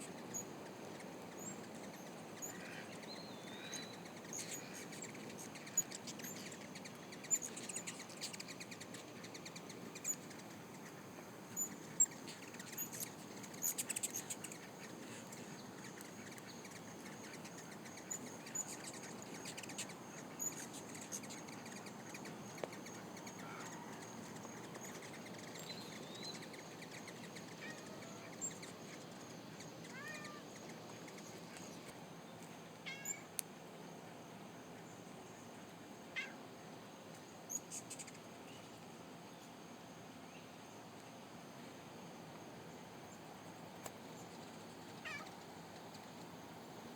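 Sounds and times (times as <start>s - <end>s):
hummingbirds chirping: 0.0s - 32.4s, 37.5s - 39.5s.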